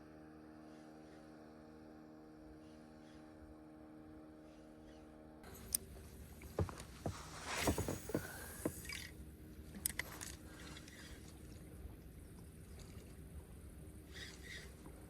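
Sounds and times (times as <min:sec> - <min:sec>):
fishing gear knocking and scraping: 0:06.4 - 0:09.1.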